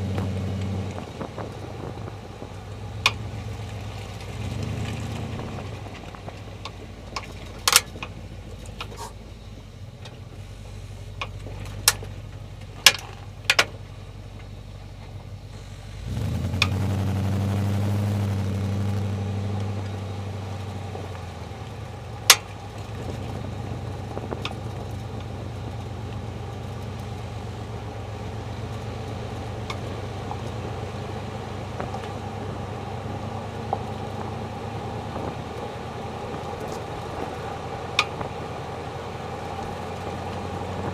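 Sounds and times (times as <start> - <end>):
car engine running: 0.0 - 40.9.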